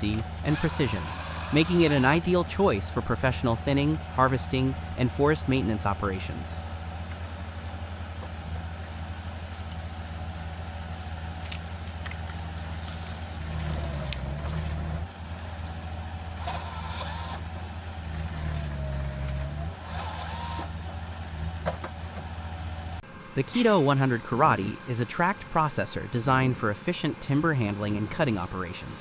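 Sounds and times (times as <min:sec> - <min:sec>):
high whine changing pitch: 0:23.5 - 0:25.0.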